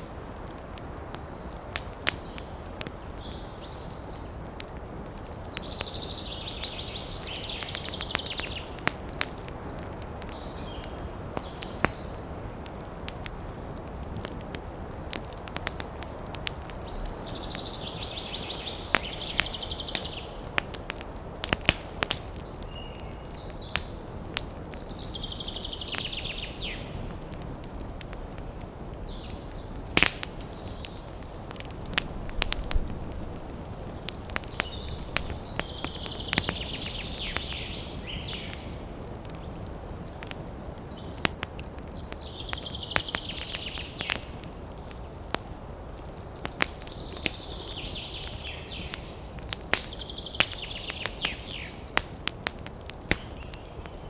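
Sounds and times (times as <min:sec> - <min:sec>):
campfire crackling and popping: 0:00.0 - 0:54.0.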